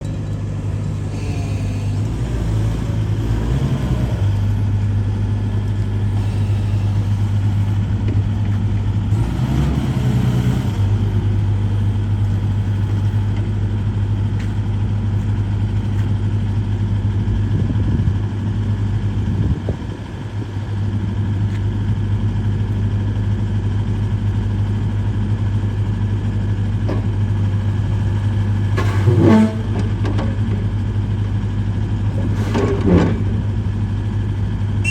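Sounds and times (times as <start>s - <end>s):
diesel engine idling: 0.0s - 34.9s.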